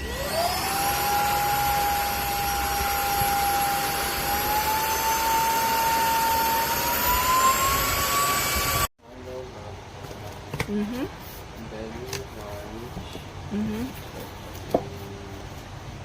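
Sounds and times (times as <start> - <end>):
vacuum cleaner motor whine: 0.0 - 8.9.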